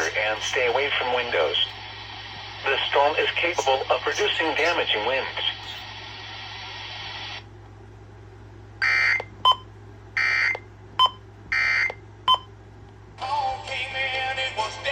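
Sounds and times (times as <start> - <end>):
radio hiss: 0.0 - 7.5.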